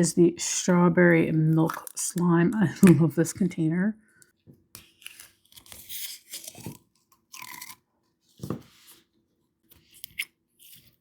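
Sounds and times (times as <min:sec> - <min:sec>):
plastic packaging crinkling and tearing: 0:04.8 - 0:07.8.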